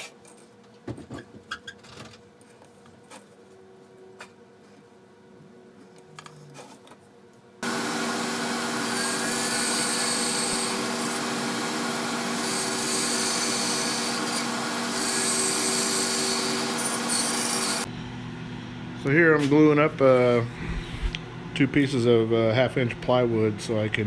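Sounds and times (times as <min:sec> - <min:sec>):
power tool cutting wood: 0:07.6 - 0:17.9.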